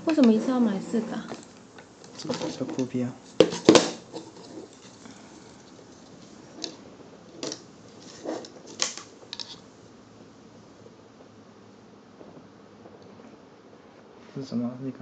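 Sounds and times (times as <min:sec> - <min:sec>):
plastic packaging clicks and rustles: 0:07.4 - 0:09.6.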